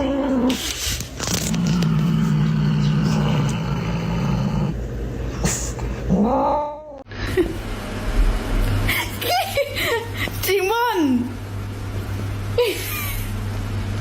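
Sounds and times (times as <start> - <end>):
cat growling: 0.0 - 4.8, 6.0 - 7.0.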